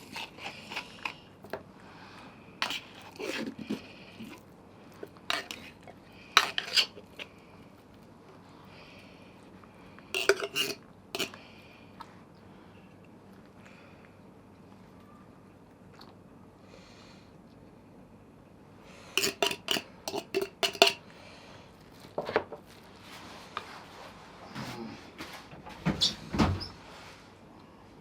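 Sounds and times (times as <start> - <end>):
dishes and utensils clattering: 5.3 - 5.8, 6.4 - 6.9, 10.2 - 11.3, 19.2 - 21.0.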